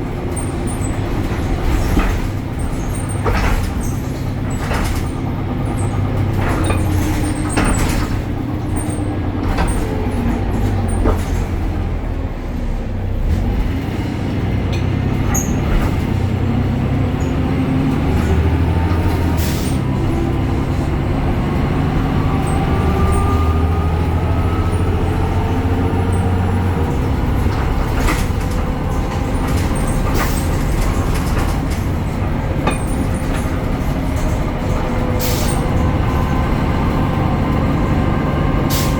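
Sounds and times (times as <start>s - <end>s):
bus diesel engine droning: 0.0s - 38.9s
clicks and rattles: 26.8s - 37.8s.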